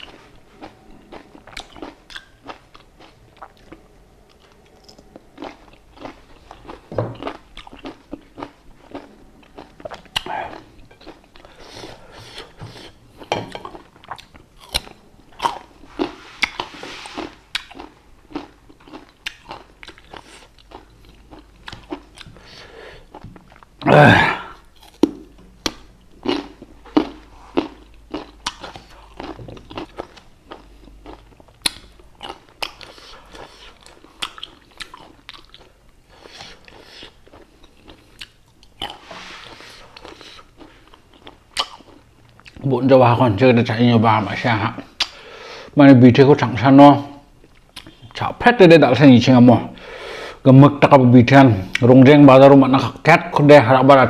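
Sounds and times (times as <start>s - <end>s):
person chewing crunchy fruit: 0.0s - 42.7s, 47.3s - 48.3s
crisp fruit bites and crunching: 13.6s - 22.3s, 23.1s - 35.7s.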